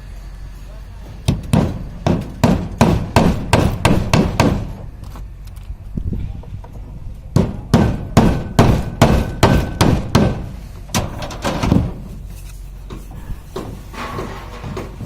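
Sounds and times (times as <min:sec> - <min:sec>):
hammer blows: 0:01.2 - 0:04.8, 0:07.4 - 0:12.0.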